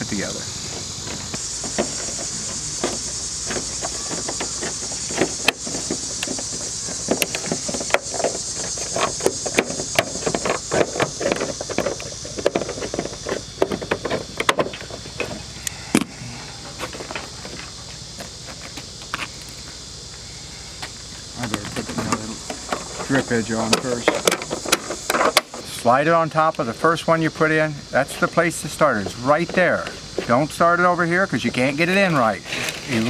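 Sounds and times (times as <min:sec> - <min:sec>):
insects buzzing: 0:00.0 - 0:33.0.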